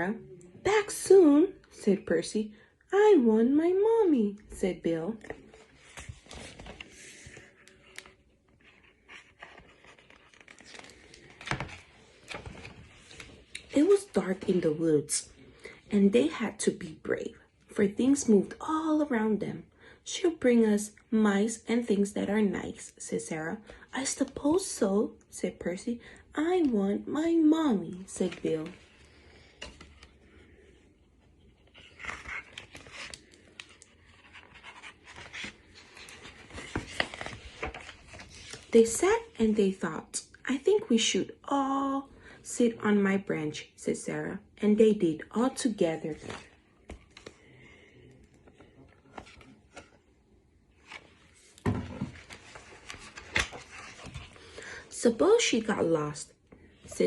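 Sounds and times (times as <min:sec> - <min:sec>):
paper pages rustling: 0:05.2 - 0:14.8, 0:27.9 - 0:39.0, 0:46.1 - 0:47.5, 0:48.2 - 0:50.1, 0:50.7 - 0:54.6.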